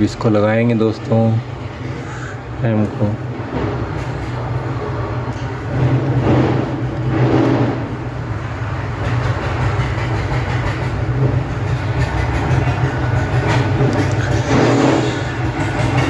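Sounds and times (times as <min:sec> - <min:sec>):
hot-air station blowing: 0:11.0 - 0:16.0.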